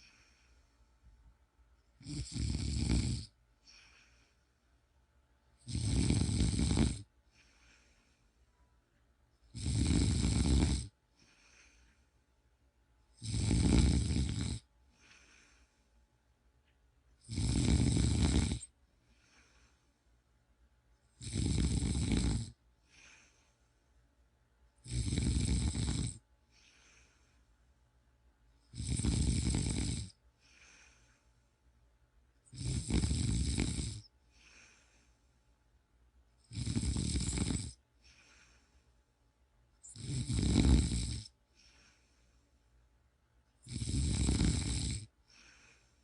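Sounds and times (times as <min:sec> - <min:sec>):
faint breathing: 0:00.0 - 0:01.3, 0:03.2 - 0:04.9, 0:07.0 - 0:08.8, 0:10.8 - 0:12.4, 0:14.2 - 0:16.2, 0:17.7 - 0:20.3, 0:22.6 - 0:24.1, 0:26.4 - 0:27.8, 0:30.1 - 0:31.8, 0:32.4 - 0:35.7, 0:36.7 - 0:39.2, 0:41.2 - 0:43.0, 0:45.1 - 0:46.0
person snoring: 0:02.0 - 0:04.4, 0:05.6 - 0:08.0, 0:09.5 - 0:11.9, 0:13.2 - 0:15.7, 0:17.2 - 0:19.8, 0:21.2 - 0:23.5, 0:24.8 - 0:27.4, 0:28.7 - 0:31.2, 0:32.5 - 0:35.1, 0:36.5 - 0:38.7, 0:39.8 - 0:42.1, 0:43.6 - 0:46.0.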